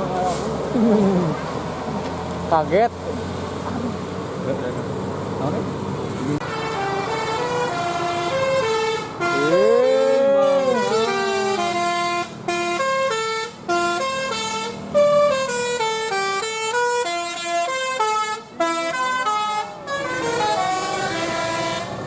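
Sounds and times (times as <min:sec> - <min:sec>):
bus musical horn playing a tune: 0:06.4 - 0:22.0.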